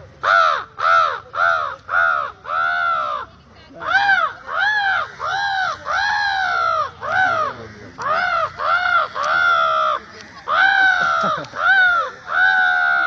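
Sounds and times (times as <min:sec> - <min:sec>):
man imitating crow caws: 0:03.8 - 0:13.0.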